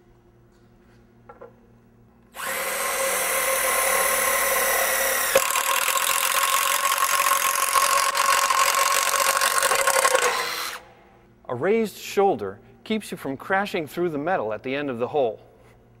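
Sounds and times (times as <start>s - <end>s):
hole saw cutting metal: 2.4s - 10.8s
impact driver whining: 2.4s - 10.9s.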